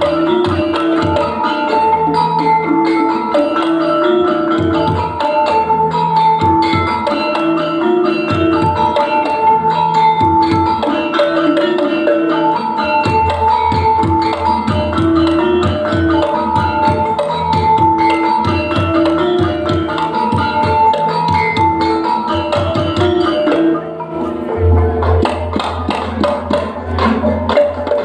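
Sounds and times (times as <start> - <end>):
drums: 0.0 - 28.0
mallet percussion tones: 0.0 - 28.0
sustained melody: 18.2 - 28.0.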